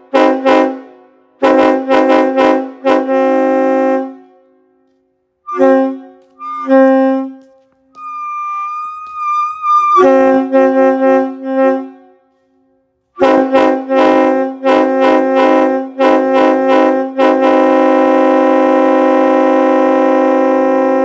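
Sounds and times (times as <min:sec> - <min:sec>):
train horn blasts: 0:00.0 - 0:04.8, 0:05.5 - 0:07.4, 0:09.6 - 0:12.6, 0:13.2 - 0:21.0.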